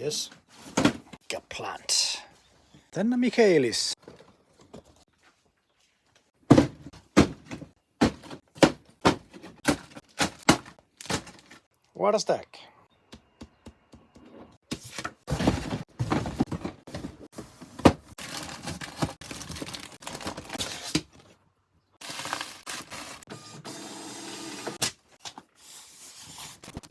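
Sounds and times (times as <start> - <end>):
cardboard boxes rustling and knocking: 0.5 - 1.2, 6.5 - 11.6, 14.7 - 21.3.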